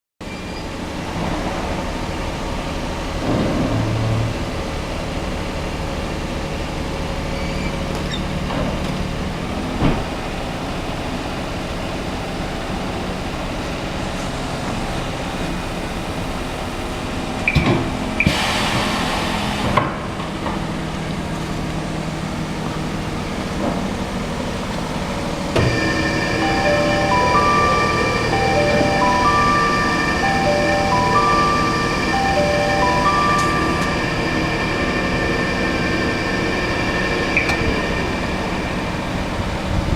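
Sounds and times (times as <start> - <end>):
roller tester humming: 25.6 - 39.8.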